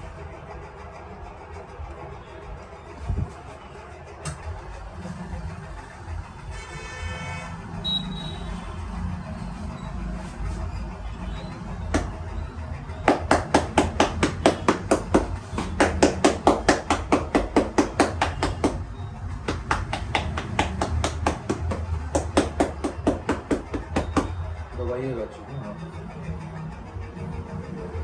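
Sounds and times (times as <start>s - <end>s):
hands striking in tapping massage: 11.9s - 12.3s, 13.0s - 24.4s.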